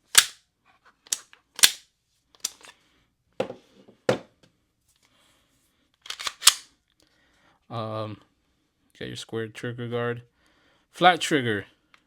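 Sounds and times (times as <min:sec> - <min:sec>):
pistol mechanical clicks: 0:00.1 - 0:00.4, 0:01.1 - 0:01.8, 0:06.0 - 0:06.7.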